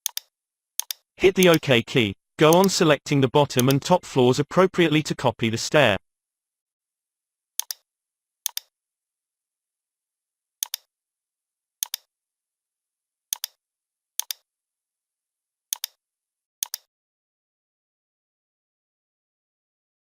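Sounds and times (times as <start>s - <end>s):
computer mouse clicks: 0.0s - 1.5s, 3.6s - 3.8s, 7.6s - 7.8s, 8.5s - 8.7s, 10.6s - 10.9s, 11.8s - 12.1s, 13.3s - 13.6s, 14.2s - 14.4s, 15.7s - 16.0s, 16.6s - 16.9s.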